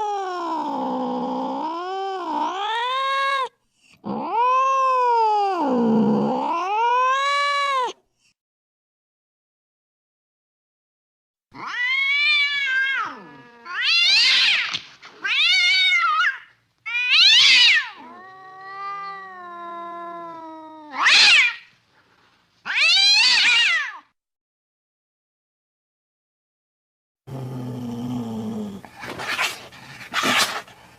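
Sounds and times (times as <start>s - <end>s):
cat meowing: 0.0s - 8.0s, 11.6s - 21.7s, 22.7s - 24.1s.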